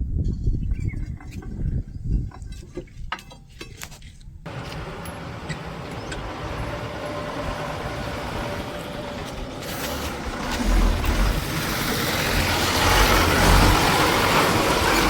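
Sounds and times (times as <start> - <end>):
motor vehicle running: 4.5 - 15.0.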